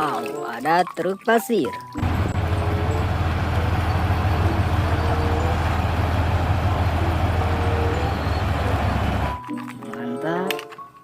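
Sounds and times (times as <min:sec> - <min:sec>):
heavy truck engine idling: 0:02.0 - 0:09.4.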